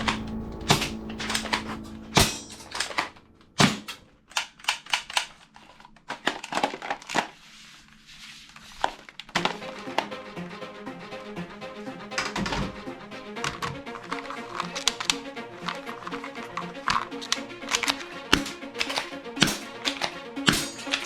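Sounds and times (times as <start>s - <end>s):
plastic toy gun clicks and knocks: 4.3s - 5.5s.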